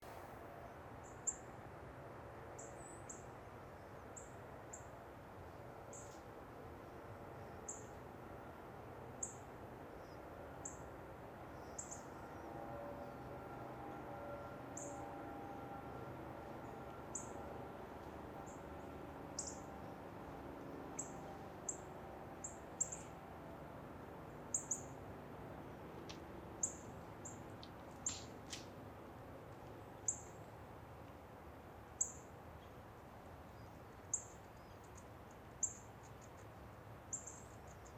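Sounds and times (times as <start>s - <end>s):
bird chirps: 11.6s - 12.4s, 19.4s - 19.7s, 21.0s - 23.1s, 24.5s - 25.0s.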